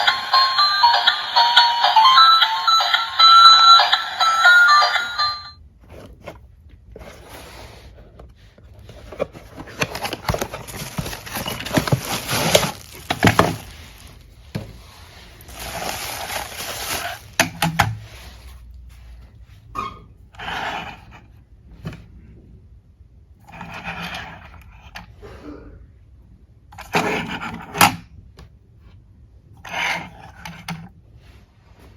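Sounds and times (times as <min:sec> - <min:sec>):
bright musical jingle: 0:00.0 - 0:05.6
toy packaging rustling and clicking: 0:08.6 - 0:18.0.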